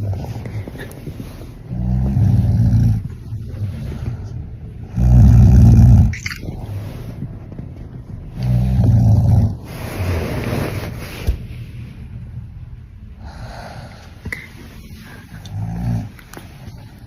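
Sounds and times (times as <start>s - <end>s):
quiet breathing: 0.0s - 5.4s, 8.3s - 17.0s
person snoring loudly: 4.9s - 6.1s.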